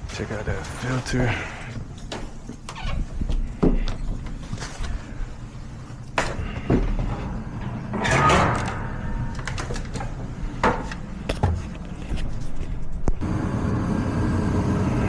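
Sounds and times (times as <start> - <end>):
sharp knocks and clunks: 6.2 - 11.9.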